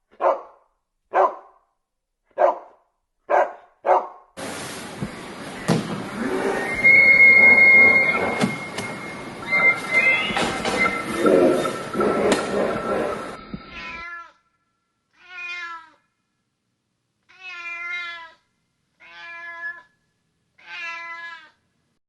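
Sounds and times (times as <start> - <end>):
loud noisy sound: 4.4 - 13.6
cat meowing: 13.7 - 14.4, 15.2 - 16.0, 17.3 - 18.4, 19.0 - 19.9, 20.6 - 21.6.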